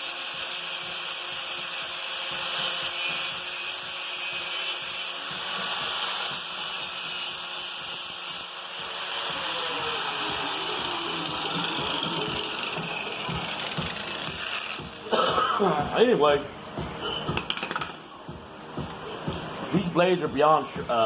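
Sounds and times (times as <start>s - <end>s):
electric grinder whining on steel: 0.0s - 15.0s.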